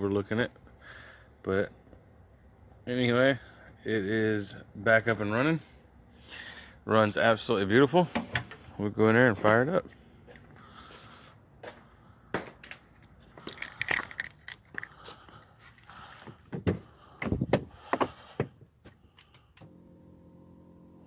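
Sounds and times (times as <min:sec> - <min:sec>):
knocks and handling noises: 0:11.6 - 0:19.6.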